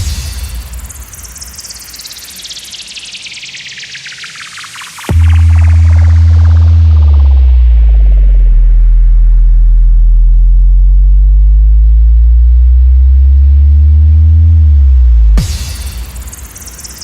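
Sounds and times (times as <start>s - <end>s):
pure tone sweeping in pitch: 1.9s - 11.3s
sub-bass drone: 5.0s - 16.4s.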